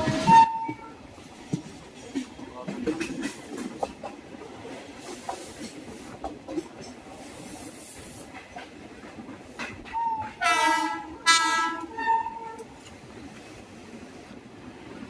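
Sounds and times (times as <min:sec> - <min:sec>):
shrill locomotive horn blasts: 0:00.0 - 0:01.0, 0:09.9 - 0:12.7
wheels clicking over rail joints: 0:00.0 - 0:14.0.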